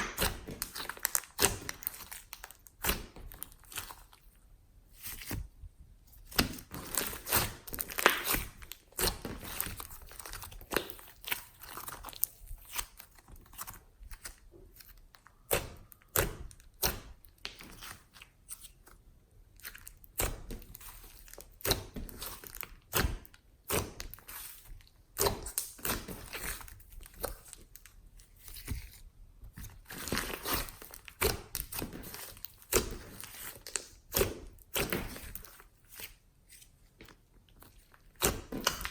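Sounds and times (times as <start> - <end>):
slime kneaded by hand: 0.0 - 38.9.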